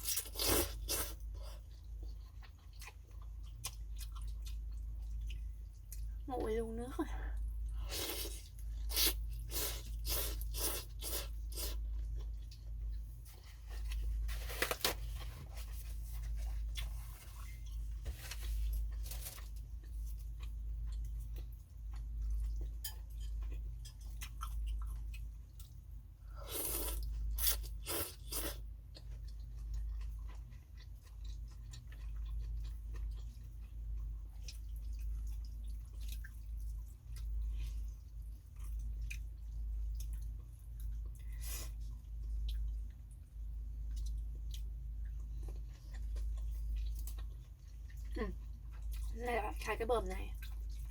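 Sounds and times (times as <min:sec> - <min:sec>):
person chewing: 0:00.0 - 0:06.2, 0:07.4 - 0:49.2
steady low hum: 0:00.0 - 0:50.9.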